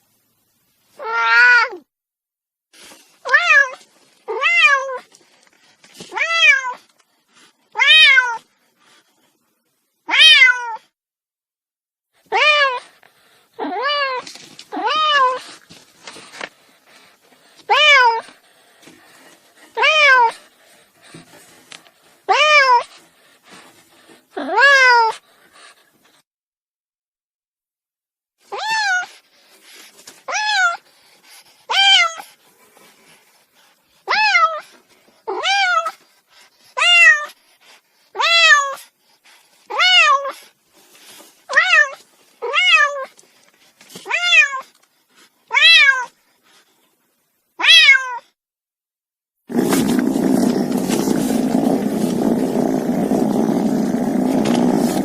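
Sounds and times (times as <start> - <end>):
cat meowing: 7.8 - 8.4, 10.1 - 10.8, 12.3 - 12.8, 24.4 - 25.2, 41.5 - 43.1, 45.5 - 46.1, 47.6 - 48.3.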